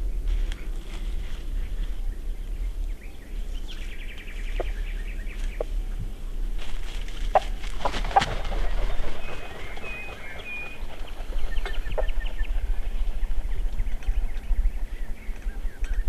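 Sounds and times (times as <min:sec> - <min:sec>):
small birds chirping: 0:00.0 - 0:16.0
wind rumbling on microphone: 0:00.0 - 0:16.0
turkey clucking: 0:07.2 - 0:14.4.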